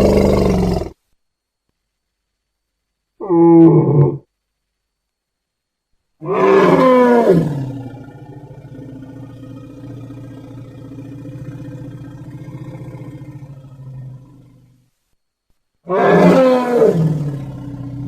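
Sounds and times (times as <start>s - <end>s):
low rough growl: 0.0s - 1.0s, 6.2s - 14.8s
animal roar falling in pitch: 3.2s - 4.3s, 6.2s - 14.6s, 15.9s - 18.0s.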